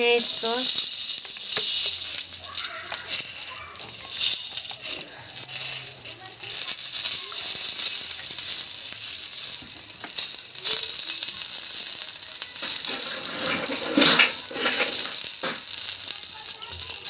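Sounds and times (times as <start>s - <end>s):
leaves sizzling in oil: 0.0s - 17.0s
pan scrape: 12.6s - 15.6s.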